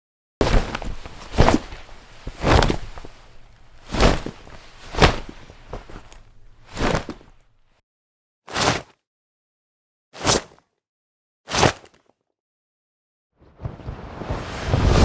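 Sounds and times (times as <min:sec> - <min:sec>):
noisy swishes and knocks: 0:13.4 - 0:15.0.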